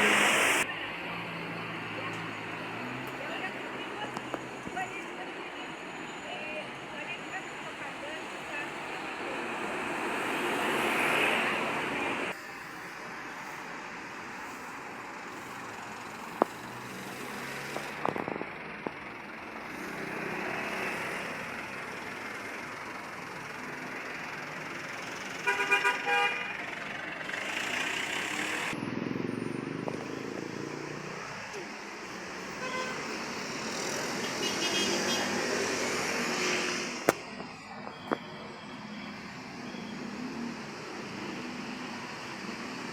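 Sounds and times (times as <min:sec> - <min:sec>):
road traffic: 0:00.0 - 0:42.9
musical bus horn toots: 0:25.4 - 0:26.6, 0:32.6 - 0:33.0.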